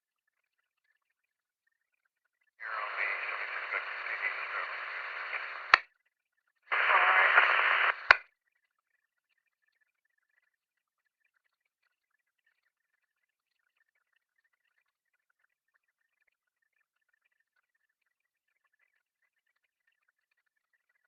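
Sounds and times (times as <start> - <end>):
police radio transmission hiss: 2.6 - 5.8, 6.7 - 8.2
radio squelch click: 2.6 - 5.8, 6.7 - 8.2.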